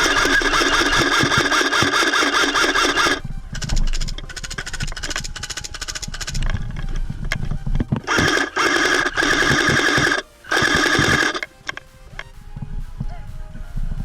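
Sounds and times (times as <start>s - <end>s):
airsoft gun firing bursts: 0.0s - 6.9s, 8.0s - 11.8s.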